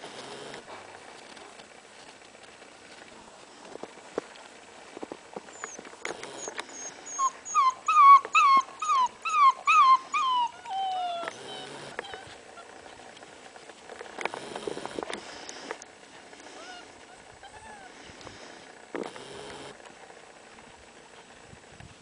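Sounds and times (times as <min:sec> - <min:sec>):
puppy yipping: 0:05.5 - 0:12.7, 0:16.6 - 0:17.9
puppy whining: 0:05.5 - 0:13.0, 0:16.5 - 0:18.1.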